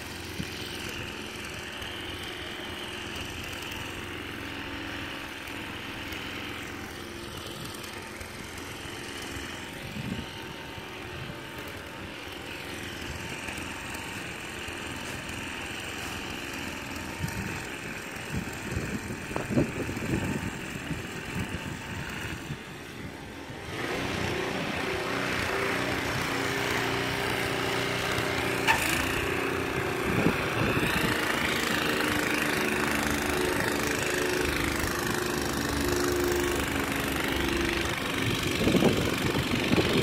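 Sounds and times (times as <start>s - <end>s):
strong blizzard wind buffeting: 37.8s - 40.0s.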